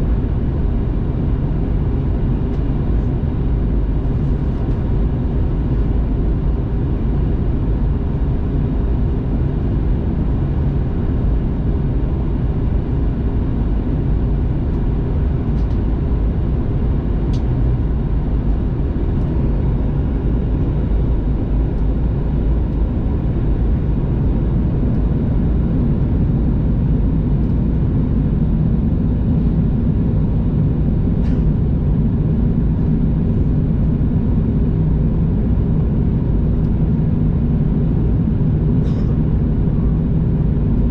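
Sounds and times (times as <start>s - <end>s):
airplane cabin rumble: 0.0s - 40.9s.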